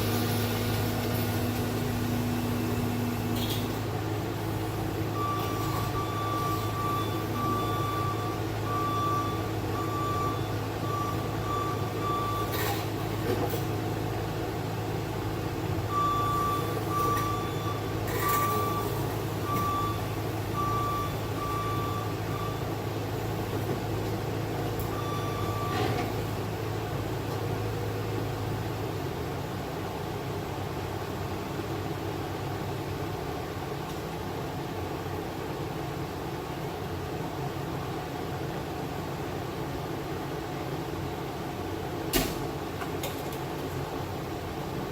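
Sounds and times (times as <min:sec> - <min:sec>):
diesel engine humming: 0:00.0 - 0:44.9
backup alarm beeping: 0:05.1 - 0:12.6, 0:15.9 - 0:22.8, 0:24.9 - 0:26.0.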